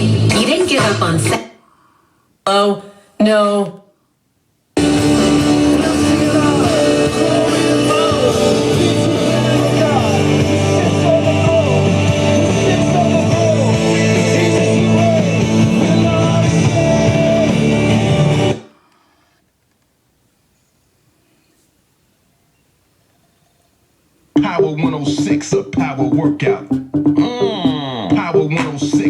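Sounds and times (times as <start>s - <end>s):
song with singing and guitar: 4.8s - 18.7s, 24.4s - 29.0s.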